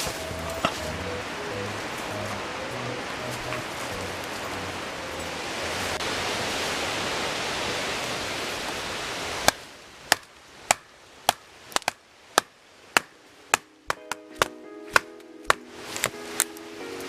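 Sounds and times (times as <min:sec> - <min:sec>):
steady rushing noise: 0:00.0 - 0:10.2
knife chopping wood: 0:09.5 - 0:16.1.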